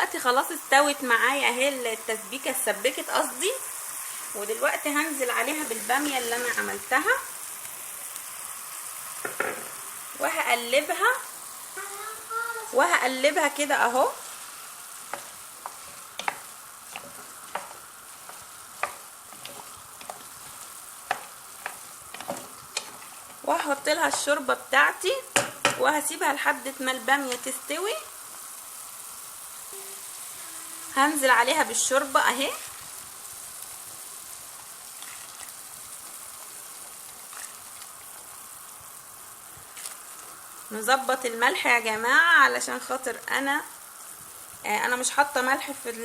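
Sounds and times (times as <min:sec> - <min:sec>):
sauce sizzling in pot: 0:00.0 - 0:46.0
spoon scraping pot: 0:14.2 - 0:24.4.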